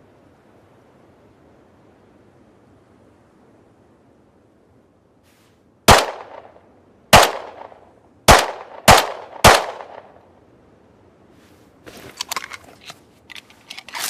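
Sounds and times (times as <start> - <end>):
pistol shots with echo: 5.9 - 10.2.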